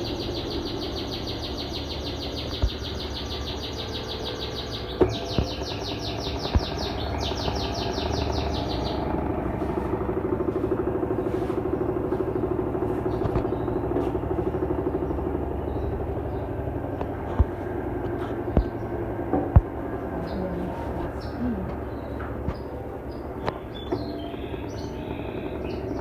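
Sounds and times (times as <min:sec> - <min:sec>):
bird chirping: 0:00.0 - 0:10.1, 0:10.7 - 0:26.0
washing machine spinning: 0:00.0 - 0:26.0
sharp knocks: 0:17.0 - 0:20.1.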